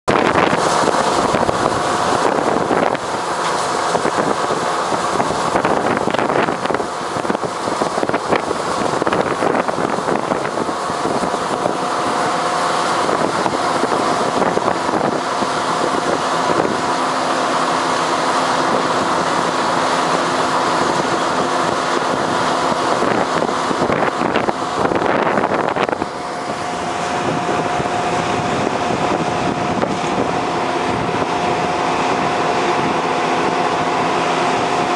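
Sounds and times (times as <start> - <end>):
combine harvester droning: 0.0 - 34.9
wind buffeting microphone: 0.1 - 34.9.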